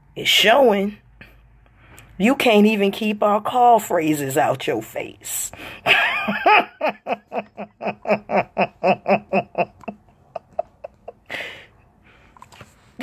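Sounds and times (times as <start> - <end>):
breath: 1.2 - 2.2, 5.5 - 5.8, 11.3 - 12.5
man laughing: 5.9 - 11.6.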